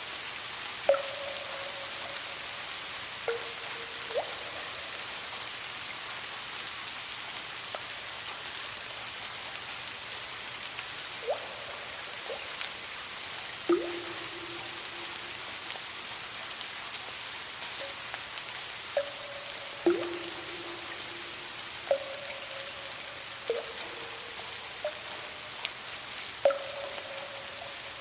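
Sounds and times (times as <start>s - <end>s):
soft rain hiss: 0.0s - 28.0s
water drips plinking: 0.8s - 6.2s, 11.1s - 28.0s.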